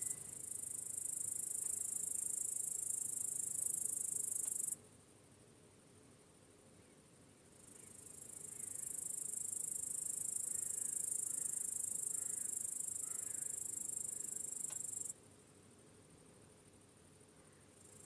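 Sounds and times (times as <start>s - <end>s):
dense cricket trill: 0.0s - 5.4s, 7.6s - 15.6s, 16.3s - 18.0s
faint crickets chirping: 0.0s - 18.0s
faint click: 4.4s - 4.6s.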